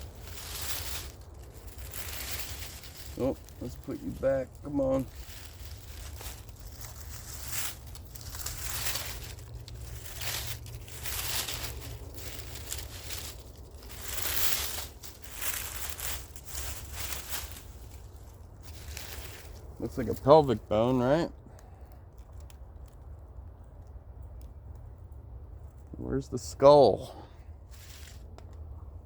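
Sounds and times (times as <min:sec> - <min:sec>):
dry leaves rustling and crunching: 0:00.0 - 0:23.1, 0:26.4 - 0:28.4.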